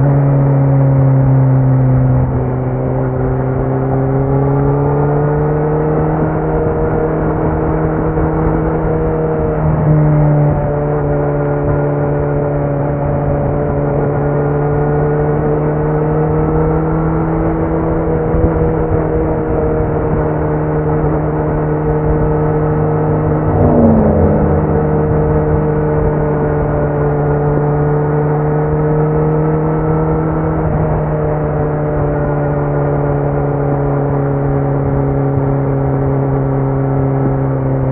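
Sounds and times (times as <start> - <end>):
motorcycle engine cruising: 18.2 - 37.8
short falling whine: 22.8 - 27.6.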